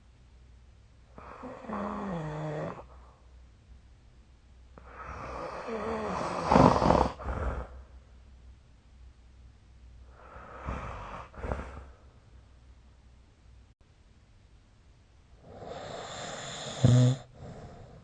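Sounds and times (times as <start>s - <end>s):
person snoring: 1.2s - 3.0s, 4.8s - 7.8s, 10.1s - 11.9s, 15.4s - 18.0s.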